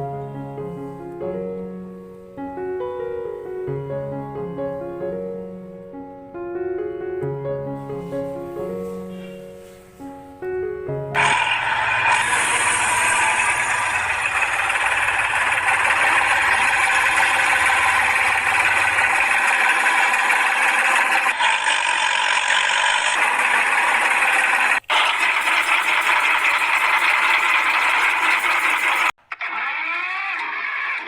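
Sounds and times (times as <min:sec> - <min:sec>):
small motor running with rattle: 0:11.2 - 0:31.0
whir with sliding pitch: 0:11.2 - 0:31.0.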